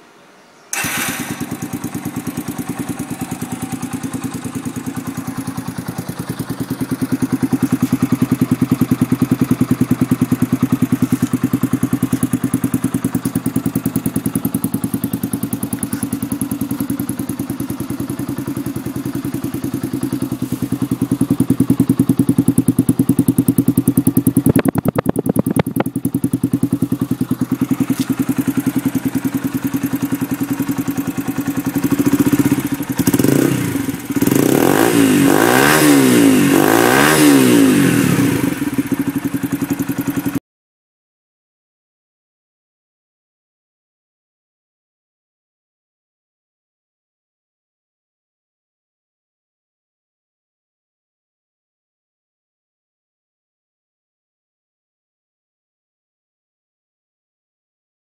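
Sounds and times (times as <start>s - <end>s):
motorcycle engine running: 0.7s - 40.4s.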